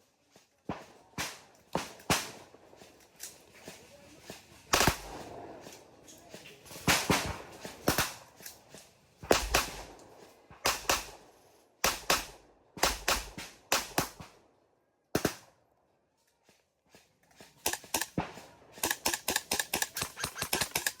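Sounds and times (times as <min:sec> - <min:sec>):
airsoft gun shots: 0:04.7 - 0:05.2, 0:09.3 - 0:09.9, 0:10.6 - 0:11.2, 0:11.8 - 0:14.2, 0:17.6 - 0:21.0
rapid clicking shots: 0:04.7 - 0:05.4, 0:06.8 - 0:08.2, 0:09.2 - 0:10.0, 0:10.6 - 0:11.2, 0:11.8 - 0:14.3, 0:17.6 - 0:21.0.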